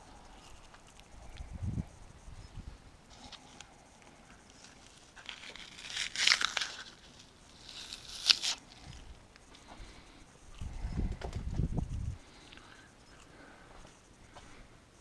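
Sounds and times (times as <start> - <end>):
rustling crinkling: 4.5 - 9.2.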